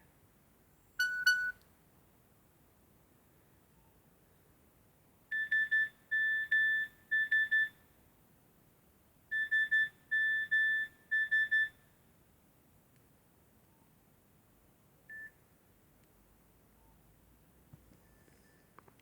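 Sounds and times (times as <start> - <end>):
mobile phone alert beeps: 1.0 - 1.6.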